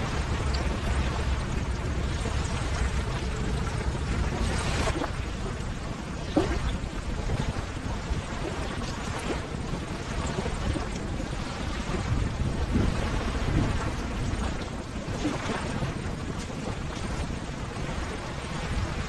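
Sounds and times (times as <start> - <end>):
ocean surf washing: 0.0 - 19.0.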